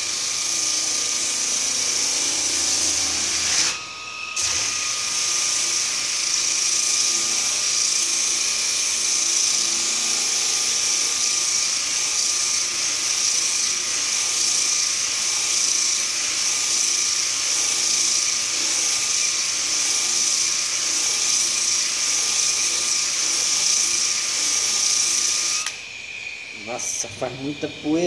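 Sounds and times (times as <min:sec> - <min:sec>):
sander motor whining: 0:00.0 - 0:28.0.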